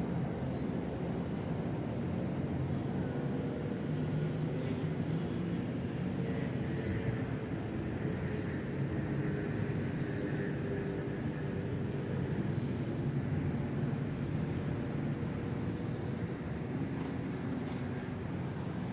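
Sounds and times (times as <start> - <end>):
faint engine hum: 0.1 - 18.9
train rumbling slowly: 0.1 - 18.9.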